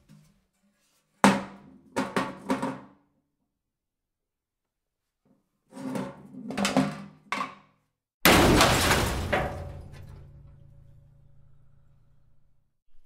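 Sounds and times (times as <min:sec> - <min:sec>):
heavy crash ringing on: 0:08.2 - 0:10.6.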